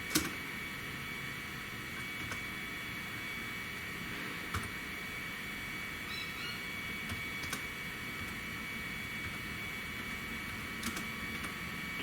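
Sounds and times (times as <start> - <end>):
computer keyboard and mouse clicks: 7.1 - 7.6, 10.8 - 11.6.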